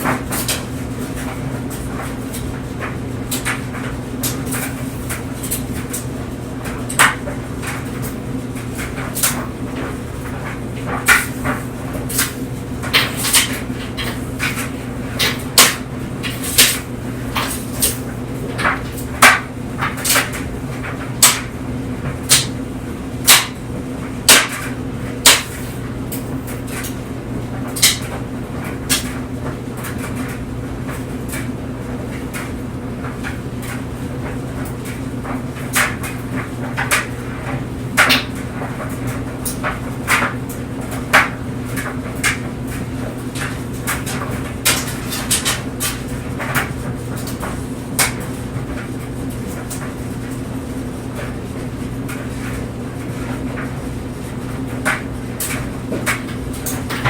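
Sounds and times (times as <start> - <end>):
clothes dryer humming: 0.0 - 57.0
sharp knocks in dryer: 6.7 - 26.9, 35.3 - 38.8, 55.9 - 57.0.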